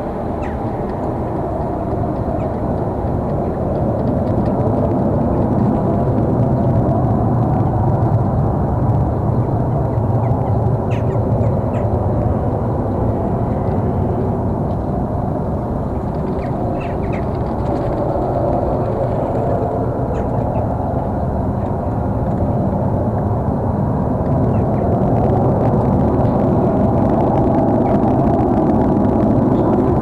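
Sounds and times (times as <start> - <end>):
loud low droning hum: 0.0 - 30.0.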